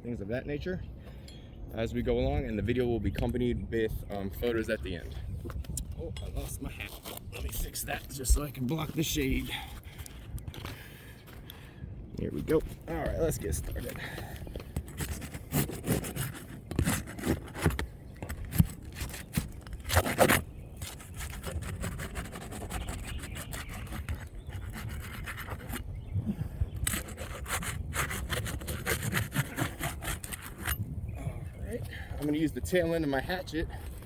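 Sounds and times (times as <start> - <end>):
tools scraping asphalt shingles: 6.2 - 10.9, 12.4 - 25.8, 26.8 - 30.9.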